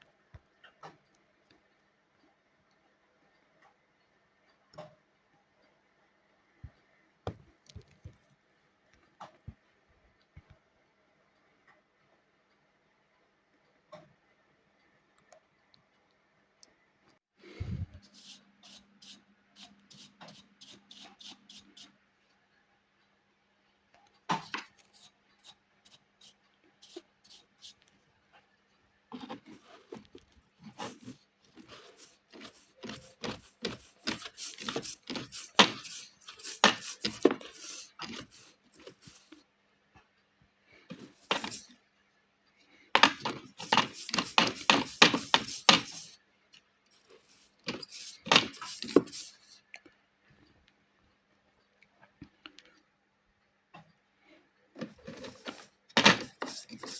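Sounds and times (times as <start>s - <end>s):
hands handling plastic parts: 29.1s - 39.4s, 40.9s - 41.7s, 43.0s - 46.2s, 47.0s - 49.6s, 54.8s - 56.9s.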